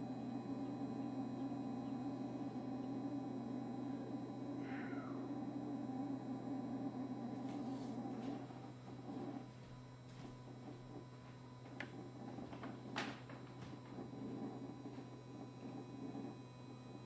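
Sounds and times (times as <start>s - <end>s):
refrigerator compressor buzz: 0.0s - 17.0s.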